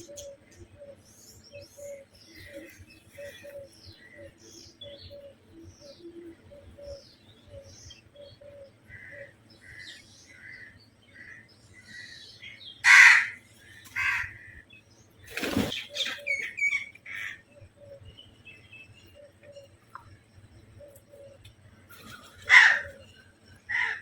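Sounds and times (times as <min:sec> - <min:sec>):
small birds chirping: 0:00.0 - 0:24.0
crows cawing: 0:08.9 - 0:12.2, 0:12.8 - 0:14.6, 0:22.1 - 0:23.1, 0:23.7 - 0:24.0.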